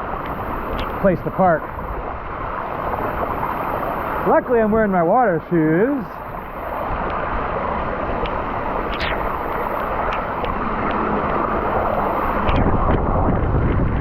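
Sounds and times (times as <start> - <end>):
wind buffeting microphone: 5.7 - 14.0.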